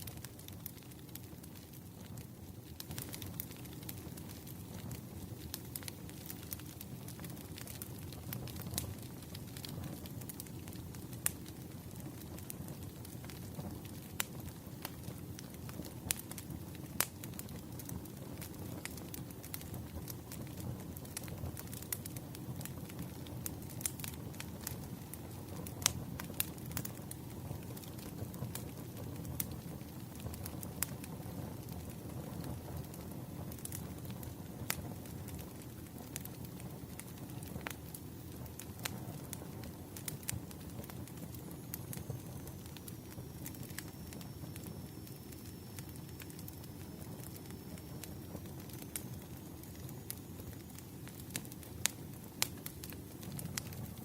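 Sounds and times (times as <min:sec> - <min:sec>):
faint high-pitched whine: 0:00.0 - 0:54.0
firewood crackling and popping: 0:00.0 - 0:54.0
low fire rumble: 0:00.0 - 0:54.0.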